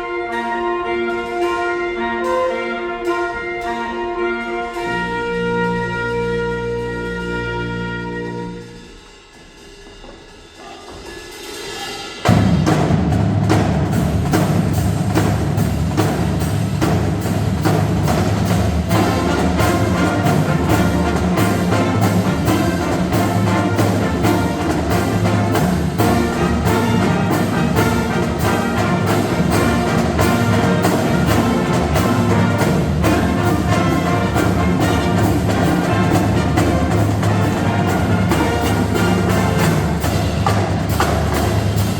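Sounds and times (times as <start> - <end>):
marching band playing: 0.0 - 41.9
drums and percussion beat: 0.1 - 41.9.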